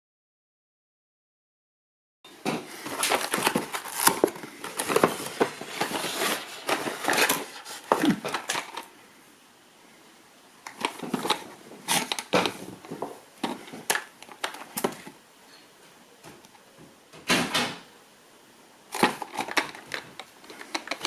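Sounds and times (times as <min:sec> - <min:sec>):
packaging rustling and crinkling: 0:02.4 - 0:08.9, 0:10.6 - 0:15.2, 0:18.9 - 0:21.0.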